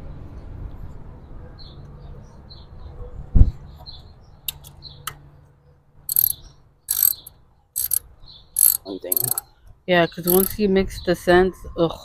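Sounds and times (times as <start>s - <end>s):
sharp clicks: 6.1s - 8.0s, 8.6s - 9.4s, 10.2s - 10.6s
small birds chirping: 6.1s - 10.6s.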